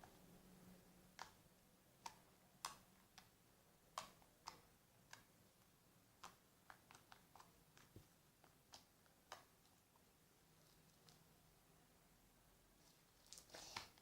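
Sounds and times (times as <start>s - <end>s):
faint small clicks and taps: 1.1s - 1.4s, 2.0s - 5.3s.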